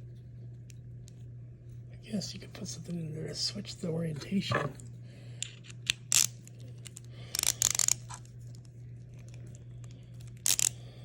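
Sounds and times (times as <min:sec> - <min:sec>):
ratchet screwdriver clicking: 0:05.4 - 0:06.4, 0:07.3 - 0:08.2, 0:10.4 - 0:10.8.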